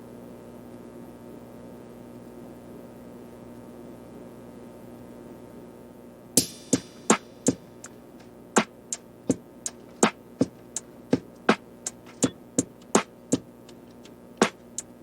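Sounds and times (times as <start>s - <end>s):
soft steady hum: 0.0s - 15.0s
drum-machine beat: 6.4s - 15.0s.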